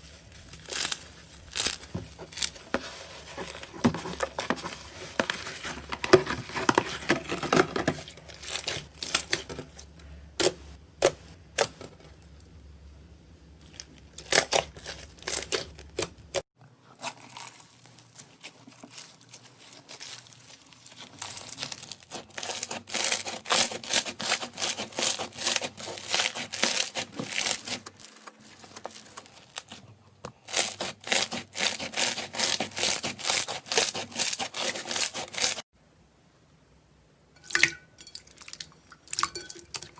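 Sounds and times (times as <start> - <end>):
slime tearing: 0.4 - 2.6.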